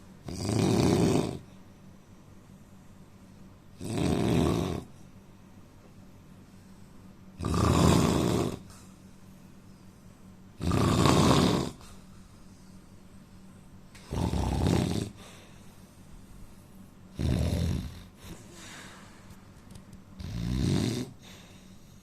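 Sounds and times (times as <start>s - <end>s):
man snoring: 0.3s - 1.4s, 3.8s - 4.9s, 7.4s - 8.7s, 10.6s - 11.8s, 14.1s - 15.2s, 17.1s - 18.1s, 20.2s - 21.2s.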